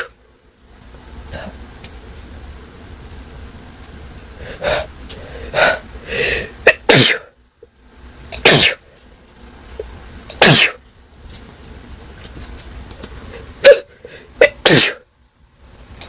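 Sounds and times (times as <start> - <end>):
person sneezing: 1.3 - 1.6, 5.5 - 7.3, 8.4 - 8.9, 10.3 - 10.8, 13.6 - 15.0.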